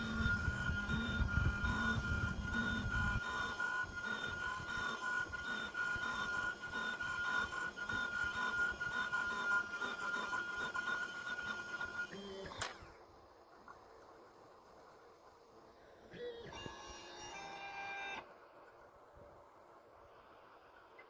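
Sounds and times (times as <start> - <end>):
milling machine spindle whining: 0.0 - 12.9.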